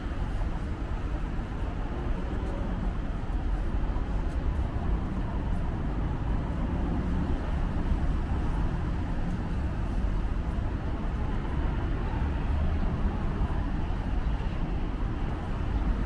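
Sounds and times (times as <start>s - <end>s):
strong wind buffeting microphone: 0.0s - 16.0s.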